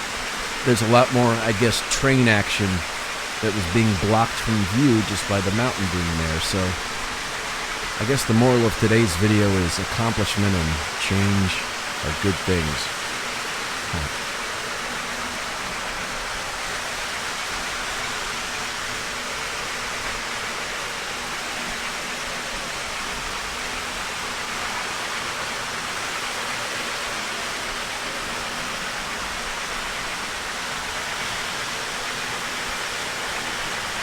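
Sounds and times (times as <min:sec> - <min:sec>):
faint steady hum: 0:00.0 - 0:15.6
model trains running on track: 0:00.5 - 0:12.9.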